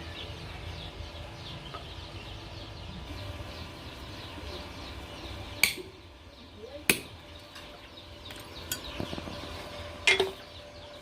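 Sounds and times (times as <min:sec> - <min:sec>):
hammer striking metal: 0:05.6 - 0:05.9.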